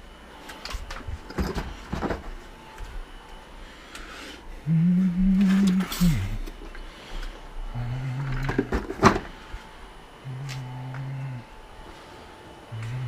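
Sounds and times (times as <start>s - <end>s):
man humming low note: 4.5s - 6.7s, 7.5s - 8.9s, 10.2s - 11.8s, 12.7s - 13.0s.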